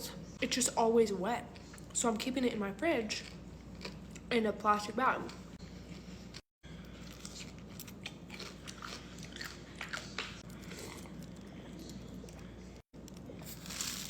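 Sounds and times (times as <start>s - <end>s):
person crunching a pickle: 7.0s - 12.0s, 13.4s - 14.0s.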